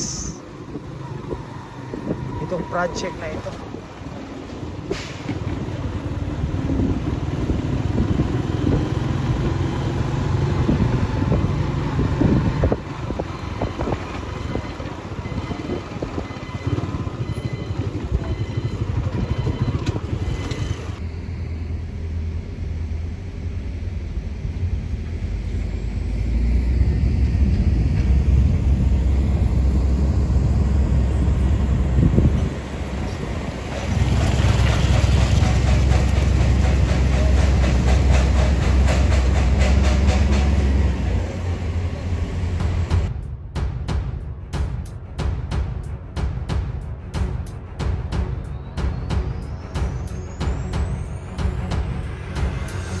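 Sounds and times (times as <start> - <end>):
wind noise on microphone: 0.0 - 21.0, 23.2 - 41.4
vehicle engine rumbling: 0.0 - 43.2.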